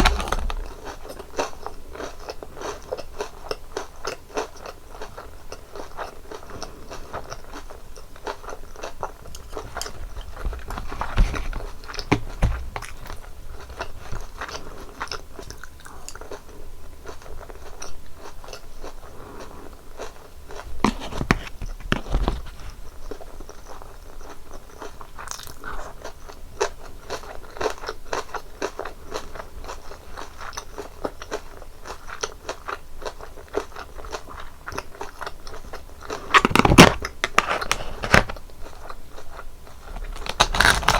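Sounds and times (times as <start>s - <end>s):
crunching bites into fried cutlet: 0.0s - 1.1s, 39.8s - 40.9s
chewing: 0.0s - 40.9s.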